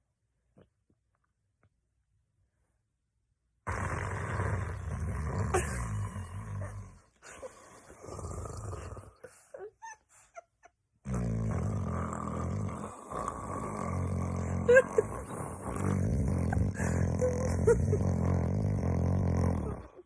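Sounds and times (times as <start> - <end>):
man snoring loudly: 3.7 - 6.9, 8.0 - 9.2, 11.0 - 20.0.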